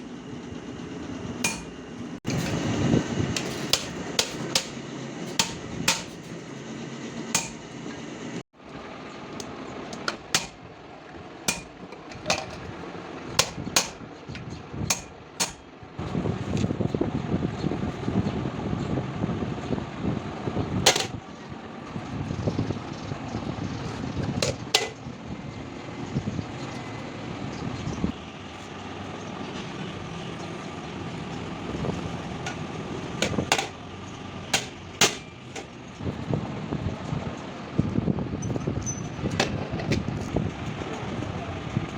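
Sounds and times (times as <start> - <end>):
steady rumbling background noise: 0.0 - 41.9
hammer strikes on metal: 1.4 - 1.8, 3.4 - 6.3, 7.4 - 7.6, 10.1 - 10.6, 11.5 - 11.8, 13.4 - 14.0, 14.9 - 15.7, 34.6 - 35.7.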